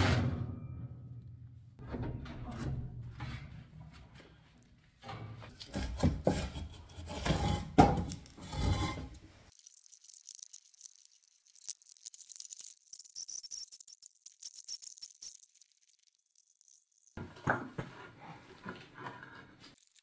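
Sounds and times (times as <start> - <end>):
building work scraping and knocking: 1.8 - 9.5, 17.2 - 19.8.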